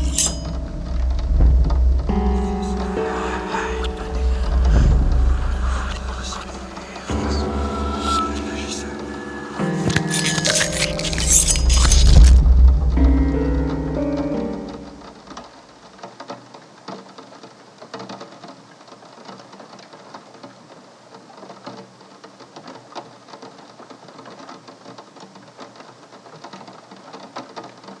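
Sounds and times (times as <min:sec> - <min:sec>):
rain patter: 0:14.7 - 0:28.0.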